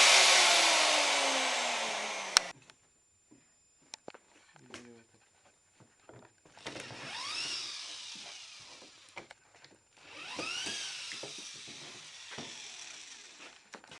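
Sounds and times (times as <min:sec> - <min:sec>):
router motor whine: 0:00.0 - 0:02.6, 0:06.6 - 0:09.3, 0:10.0 - 0:13.7.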